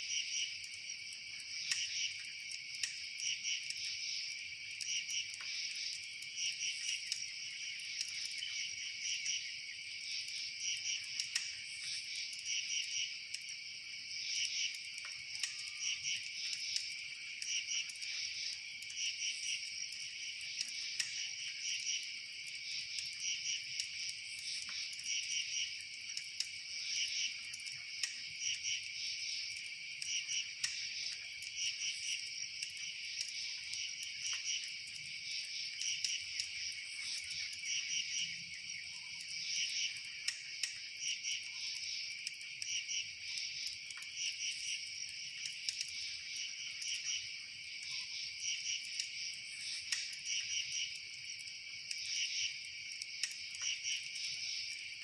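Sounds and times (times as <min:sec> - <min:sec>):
insects chirping in trills: 0:00.0 - 0:55.0
faint sharp clicks: 0:01.4 - 0:03.0, 0:11.1 - 0:12.5, 0:14.3 - 0:21.2, 0:22.5 - 0:26.6, 0:27.5 - 0:37.9, 0:39.2 - 0:40.8, 0:43.4 - 0:46.1, 0:48.6 - 0:54.8.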